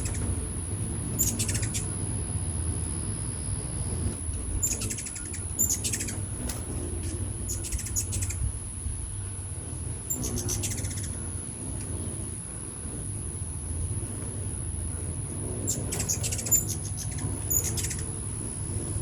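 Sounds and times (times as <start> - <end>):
hummingbirds chittering: 0.0 - 19.0
steady low hum: 0.0 - 19.0.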